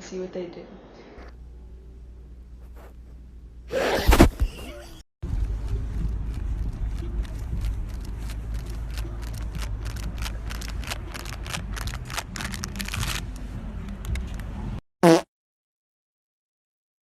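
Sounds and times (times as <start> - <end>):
steady low rumble: 5.2 - 11.1.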